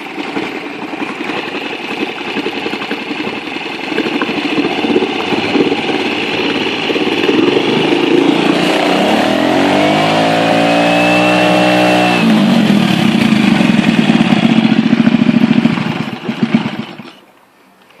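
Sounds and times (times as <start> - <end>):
outboard engine running: 0.0 - 17.2.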